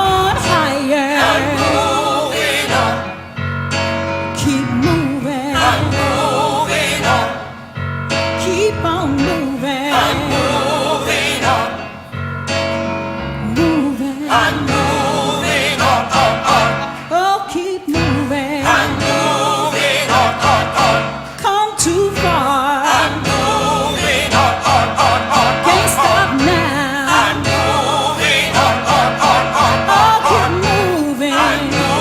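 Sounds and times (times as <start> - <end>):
low accompaniment: 0.0 - 17.1
vocal group singing: 0.0 - 32.0.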